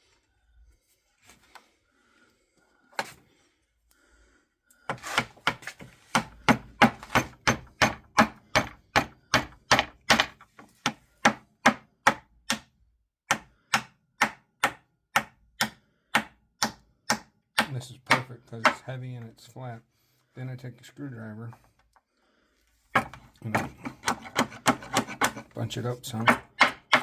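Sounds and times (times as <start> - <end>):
mallet striking wood strips: 4.9 - 12.7, 13.3 - 18.8, 22.9 - 27.0.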